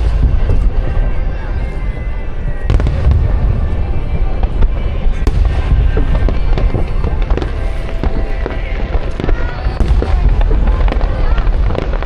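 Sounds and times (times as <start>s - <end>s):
fireworks booming: 0.0s - 12.0s
fireworks crackling and popping: 0.0s - 12.0s.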